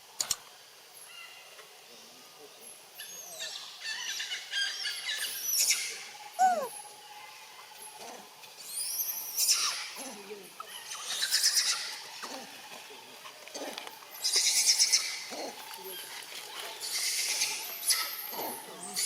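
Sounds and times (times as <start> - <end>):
low monkey call: 3.0 - 6.9, 8.0 - 12.6, 13.5 - 16.1
monkeys squealing: 6.4 - 6.7, 10.7 - 12.0.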